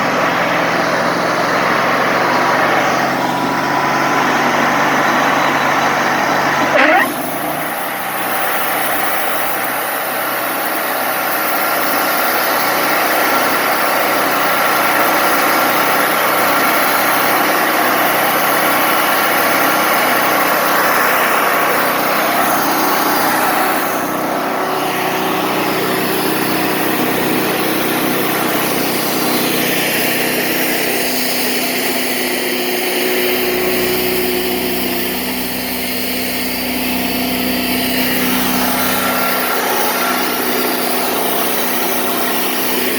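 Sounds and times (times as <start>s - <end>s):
sawmill engine drone: 0.0s - 42.9s
band blade sawing log: 6.4s - 12.5s, 17.3s - 42.9s.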